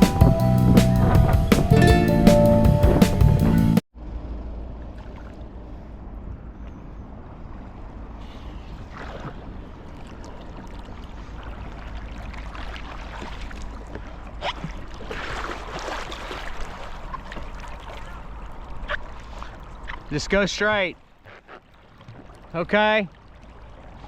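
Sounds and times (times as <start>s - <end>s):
water rushing around boat: 0.0s - 24.0s
loud splashes: 8.8s - 19.8s.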